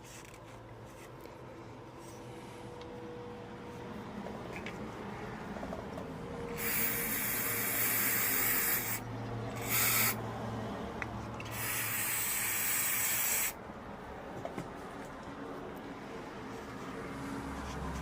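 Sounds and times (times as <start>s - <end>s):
aerosol can spraying: 6.6s - 9.0s, 9.6s - 10.2s, 11.5s - 13.6s.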